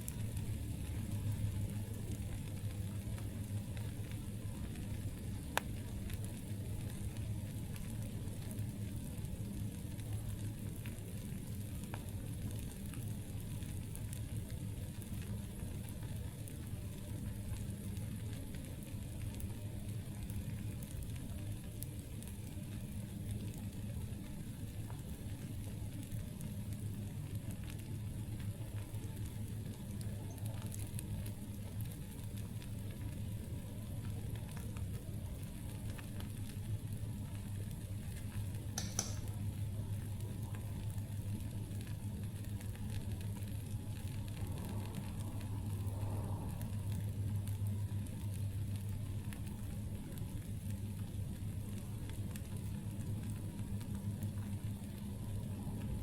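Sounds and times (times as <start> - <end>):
campfire crackling: 0.0 - 56.0
sharp pop of burning wood: 38.8 - 39.4.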